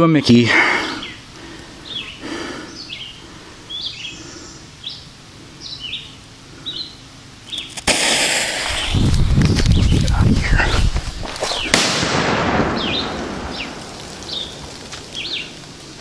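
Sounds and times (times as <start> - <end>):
loud steady hiss: 0.0 - 16.0
bird chirping: 0.9 - 7.8, 12.8 - 15.6
sudden crack: 7.8 - 9.6, 11.4 - 15.8.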